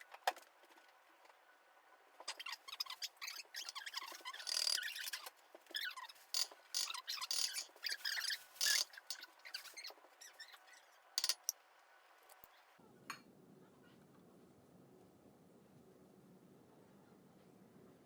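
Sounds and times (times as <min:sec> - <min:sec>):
kitchen utensils scraping: 0:03.4 - 0:10.6.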